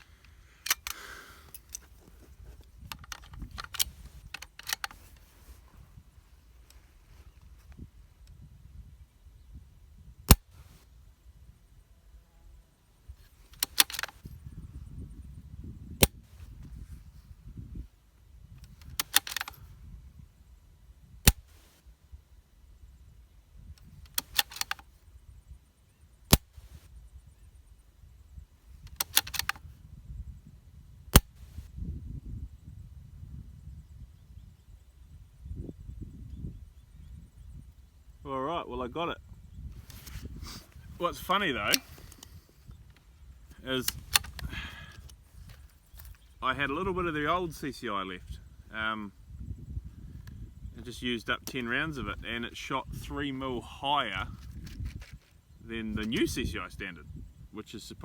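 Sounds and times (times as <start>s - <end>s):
sharp metallic clicks: 0.6s - 2.0s, 2.8s - 5.3s, 13.5s - 14.3s, 18.6s - 19.6s, 23.8s - 24.9s, 28.8s - 29.7s, 39.8s - 46.2s
rustling: 39.8s - 46.4s.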